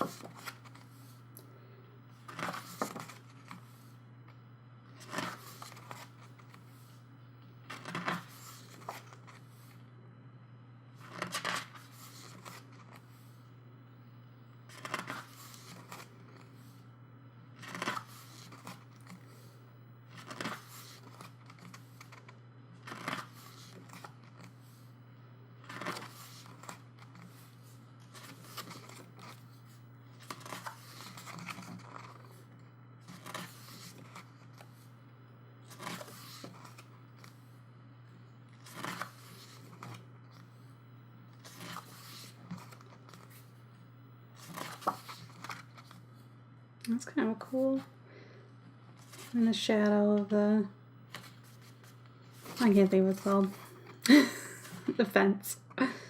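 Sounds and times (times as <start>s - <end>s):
pages turning: 0.0s - 1.2s, 2.2s - 4.0s, 5.0s - 7.0s, 7.7s - 9.8s, 11.0s - 13.4s, 14.7s - 16.8s, 17.6s - 19.5s, 20.1s - 24.9s, 25.6s - 35.0s, 35.6s - 37.5s, 38.5s - 40.7s, 41.3s - 43.6s, 44.4s - 46.2s, 48.9s - 49.4s, 51.1s - 54.0s
steady low hum: 0.0s - 56.0s.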